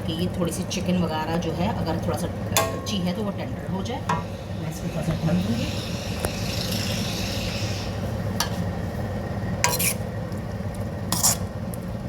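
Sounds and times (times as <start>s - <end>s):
food sizzling: 1.6s - 11.9s
spatula scraping a pan: 9.6s - 10.1s, 11.1s - 11.5s.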